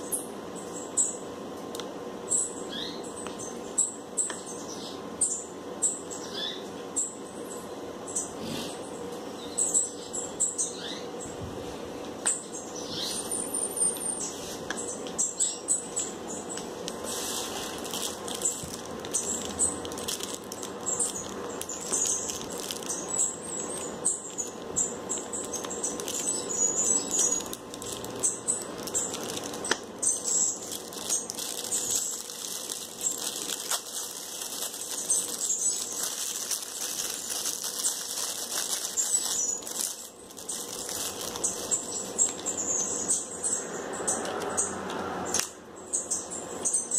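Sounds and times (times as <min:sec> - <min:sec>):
small birds chirping: 0:00.0 - 0:01.3, 0:02.2 - 0:11.4, 0:12.2 - 0:46.9
faint steady hum: 0:00.0 - 0:46.9
wings fluttering: 0:16.6 - 0:42.8
sharp clicks and light patter: 0:17.8 - 0:42.5.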